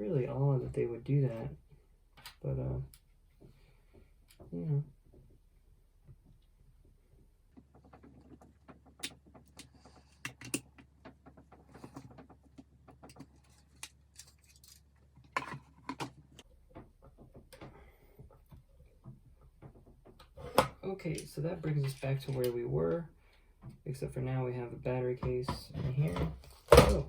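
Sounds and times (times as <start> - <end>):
plastic parts clicking and tapping: 7.5 - 22.5.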